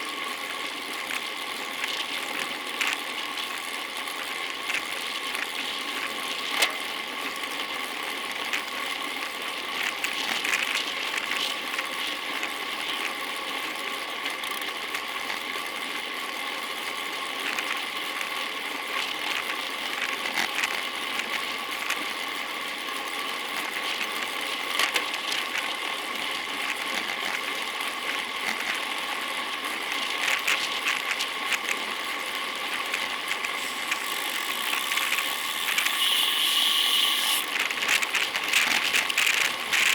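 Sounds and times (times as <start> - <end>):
bicycle freewheel clicking: 0.0 - 39.9
steady hiss: 33.6 - 37.5.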